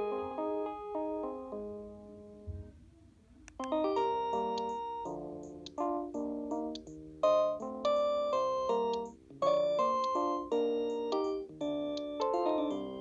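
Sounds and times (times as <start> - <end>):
cordless phone ringtone melodies: 3.6 - 13.0.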